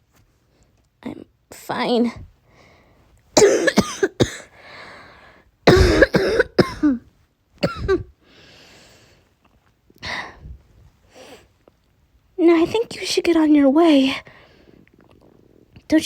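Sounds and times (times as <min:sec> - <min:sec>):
person coughing: 0:03.4 - 0:04.5, 0:05.7 - 0:07.0, 0:07.6 - 0:08.1
rough breaths drawn in: 0:04.5 - 0:05.5, 0:08.2 - 0:09.3.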